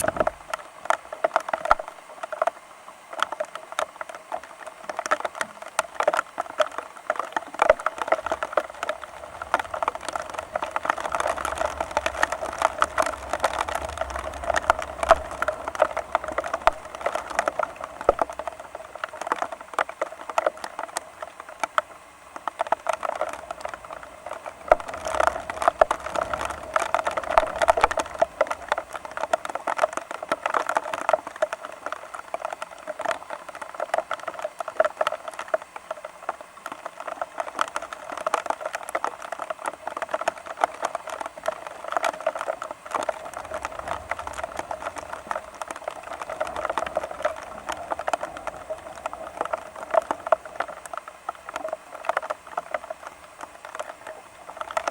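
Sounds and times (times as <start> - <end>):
low wind rumble: 0.0 - 0.5, 8.2 - 18.9
rain tapping on hard surface: 0.0 - 54.9.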